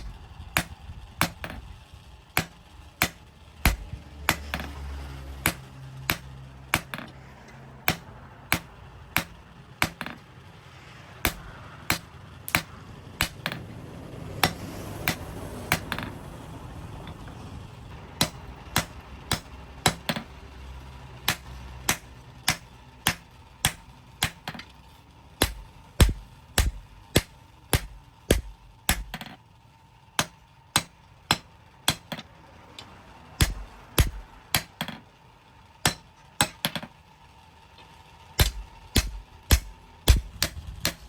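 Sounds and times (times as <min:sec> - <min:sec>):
hammer striking blade on anvil: 0:00.0 - 0:01.7, 0:02.4 - 0:07.2, 0:07.9 - 0:10.2, 0:11.2 - 0:13.7, 0:14.4 - 0:16.2, 0:18.2 - 0:20.4, 0:21.3 - 0:24.8, 0:25.4 - 0:29.4, 0:30.2 - 0:32.3, 0:33.4 - 0:35.0, 0:35.8 - 0:36.9, 0:38.4 - 0:41.0.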